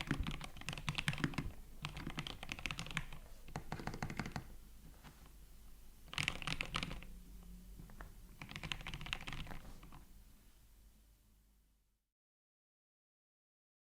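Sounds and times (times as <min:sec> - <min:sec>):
keyboard typing: 0:00.0 - 0:04.6, 0:06.1 - 0:07.1, 0:07.9 - 0:10.1.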